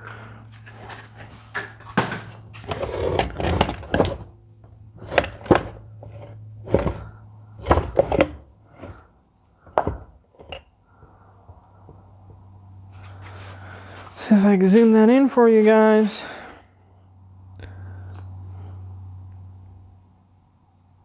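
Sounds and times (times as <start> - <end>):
steady low hum: 0.0 - 21.0
tools and metal parts clinking: 0.5 - 9.0.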